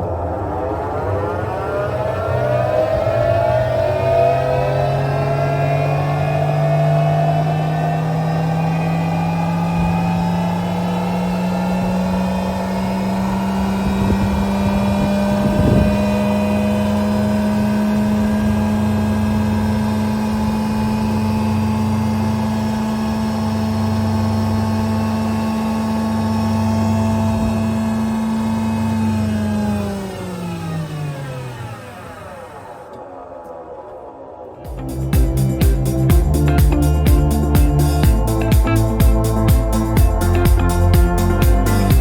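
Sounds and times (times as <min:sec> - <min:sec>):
jointer-planer motor whine: 0:00.0 - 0:33.0.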